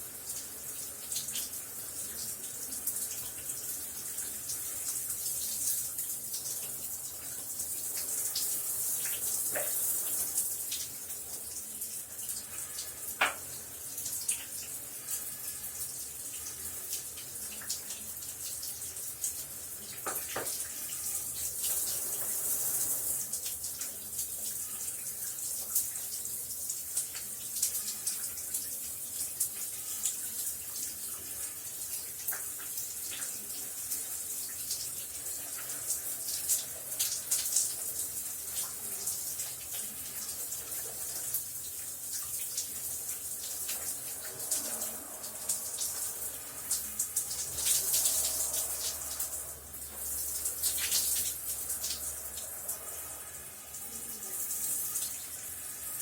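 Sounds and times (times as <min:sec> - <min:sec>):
shower running: 0:00.0 - 0:56.0.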